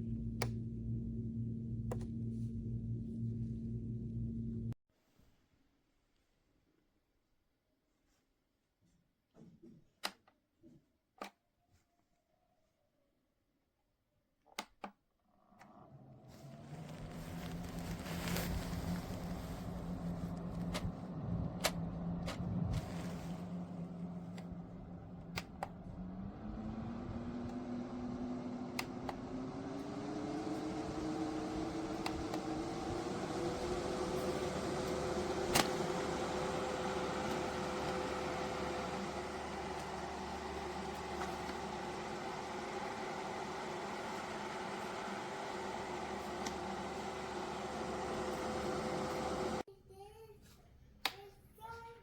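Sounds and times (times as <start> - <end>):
electric fan whirring hum: 16.4 - 49.7
clicks: 20.3 - 23.0, 28.6 - 39.0.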